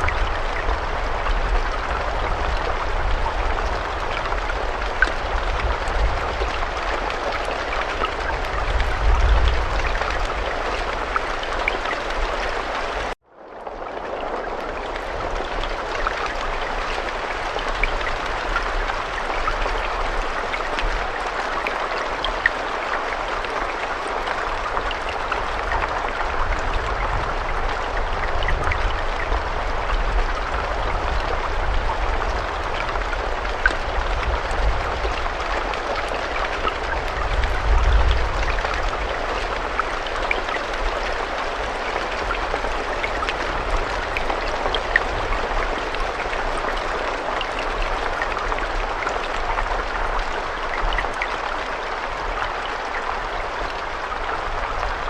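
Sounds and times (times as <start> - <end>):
steady rain: 0.0 - 55.0.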